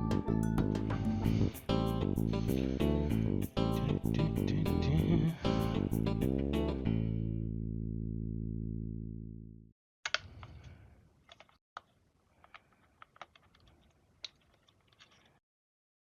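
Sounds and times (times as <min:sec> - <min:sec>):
guitar background music: 0:00.0 - 0:08.3.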